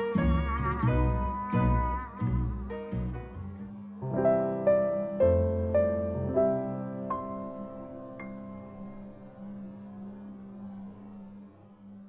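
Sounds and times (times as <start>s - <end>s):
plucked strings: 0.0s - 10.2s
bass line: 0.0s - 11.2s.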